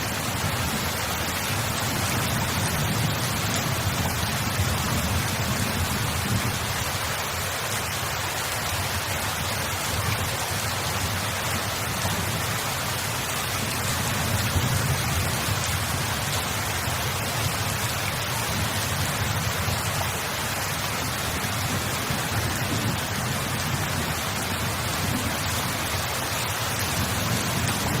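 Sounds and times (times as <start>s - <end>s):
steady rain hiss: 0.0s - 28.0s.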